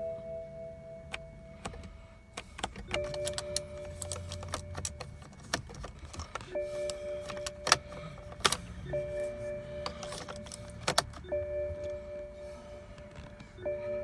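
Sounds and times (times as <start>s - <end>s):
sharp clicks and rattles: 1.6s - 8.7s, 9.8s - 11.3s.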